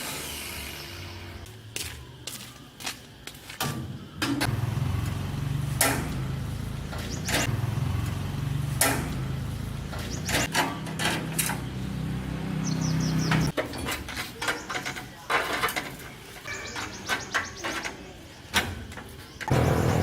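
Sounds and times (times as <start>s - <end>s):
machine motor running: 19.5s - 20.0s.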